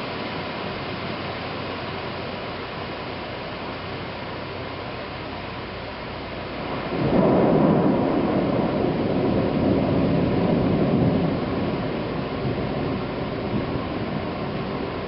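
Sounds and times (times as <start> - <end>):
steady rain: 0.0 - 15.0
thunder rumbling: 6.6 - 15.0.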